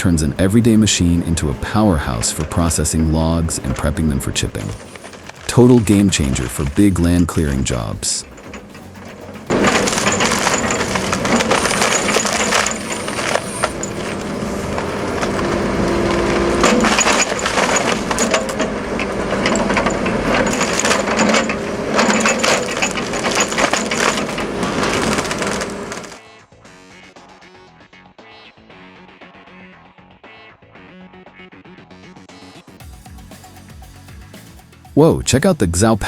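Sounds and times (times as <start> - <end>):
excavator engine and hydraulics: 0.0 - 26.2
wood cracking and splintering: 1.6 - 26.2.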